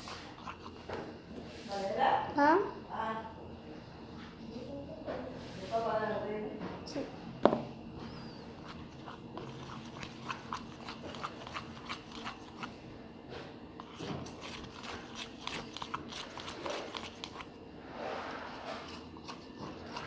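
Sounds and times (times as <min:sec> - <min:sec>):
spoon stirring thick glue: 0:00.0 - 0:01.1, 0:08.0 - 0:12.8, 0:13.8 - 0:17.6, 0:18.2 - 0:20.0.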